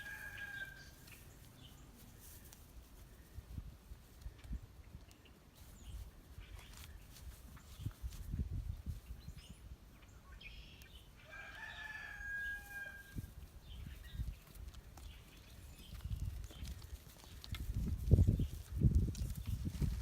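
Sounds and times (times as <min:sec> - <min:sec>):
farm animal call: 0:00.0 - 0:01.2.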